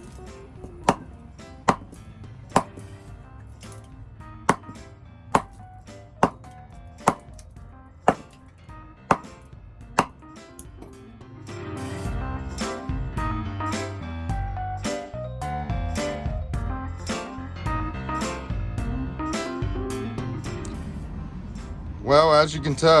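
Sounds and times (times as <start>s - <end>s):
hammer striking bowling ball: 0.7s - 1.1s, 1.7s - 2.0s, 2.6s - 2.8s, 4.5s - 4.8s, 5.4s - 5.6s, 6.2s - 6.5s, 7.1s - 7.3s, 8.1s - 8.4s, 9.1s - 9.4s.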